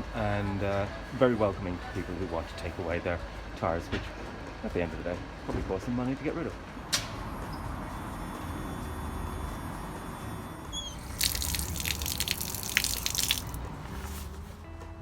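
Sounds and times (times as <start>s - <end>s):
water splashing and pouring: 10.9s - 14.4s.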